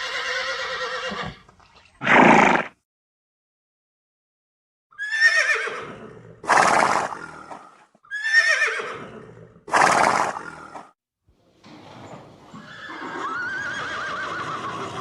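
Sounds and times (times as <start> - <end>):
horse neighing: 0.0 - 2.7, 5.0 - 10.8, 11.7 - 15.0.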